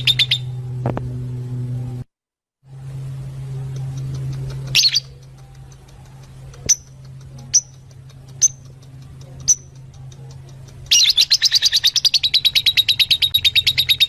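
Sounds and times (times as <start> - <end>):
birds chirping shrilly: 0.0 - 0.6
steady low hum: 0.0 - 14.0.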